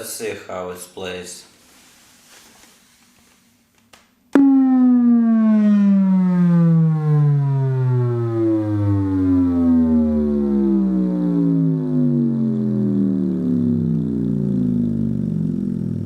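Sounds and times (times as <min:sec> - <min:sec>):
falling bass sweep tone: 0:04.4 - 0:16.0.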